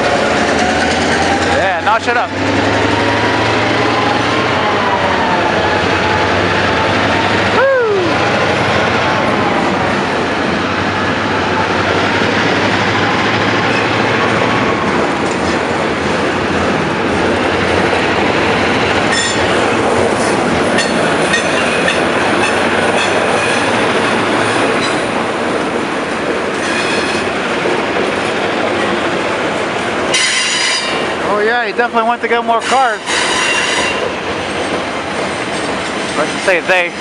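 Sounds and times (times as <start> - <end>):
steel wheels squealing on rails: 0.0 - 4.3, 19.0 - 23.8, 26.5 - 27.4, 30.1 - 31.4, 32.5 - 37.0
diesel locomotive engine running: 0.0 - 37.0.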